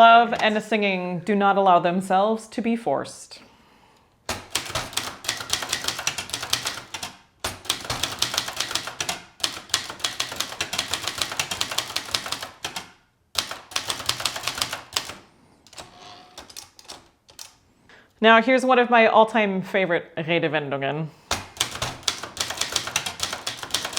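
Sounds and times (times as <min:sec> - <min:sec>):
typewriter keys striking: 0:04.3 - 0:17.6, 0:21.3 - 0:23.9.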